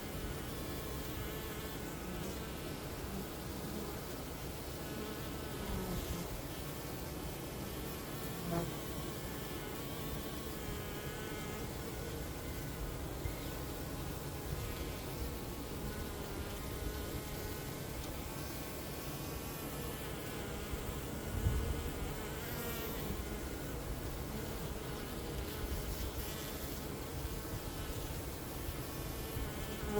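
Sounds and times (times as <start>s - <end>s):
honeybees buzzing: 0.0s - 29.9s
single bee humming close: 0.0s - 29.9s.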